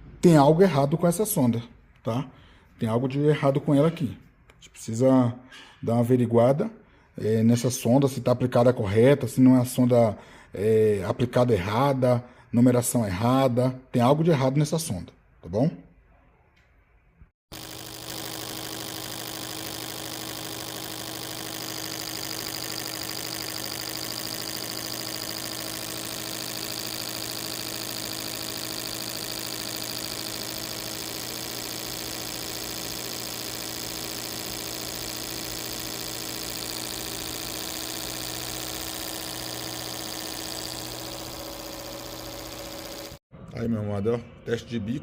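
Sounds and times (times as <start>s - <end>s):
machine humming and hissing: 17.5s - 43.2s.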